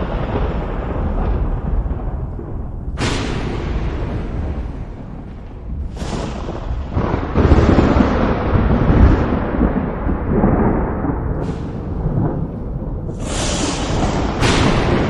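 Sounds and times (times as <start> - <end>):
sharp thunder crack: 0.0 - 15.0
thunder rumbling: 0.0 - 15.0.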